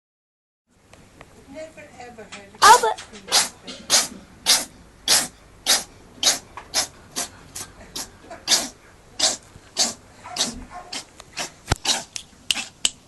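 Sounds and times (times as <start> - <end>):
cat sneezing: 2.6 - 11.0.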